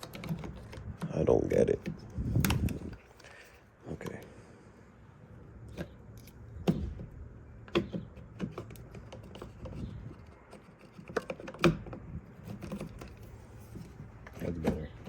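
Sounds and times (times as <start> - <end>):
door handle and latch clicking: 0.0 - 1.1.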